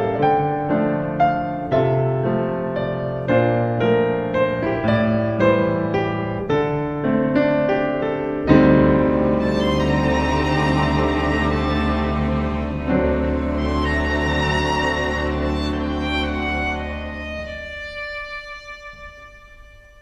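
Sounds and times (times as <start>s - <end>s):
gentle piano melody: 0.0s - 20.0s.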